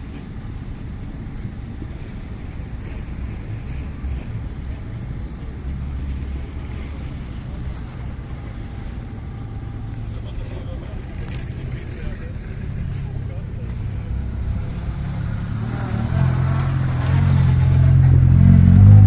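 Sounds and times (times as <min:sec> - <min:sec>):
car engines rumbling: 0:00.0 - 0:19.0.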